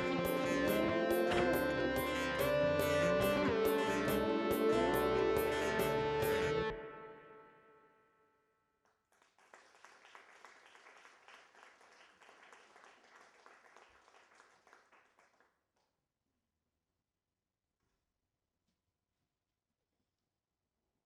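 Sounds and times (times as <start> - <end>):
music note: 0.0 - 7.8
audience applauding: 9.1 - 15.5.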